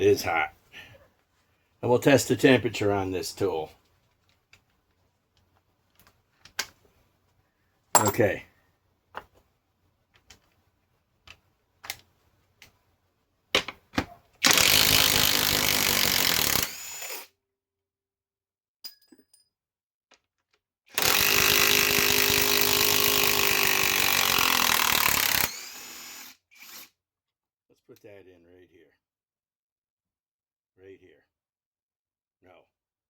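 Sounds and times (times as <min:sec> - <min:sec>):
impact wrench hammering: 0:08.0 - 0:08.4.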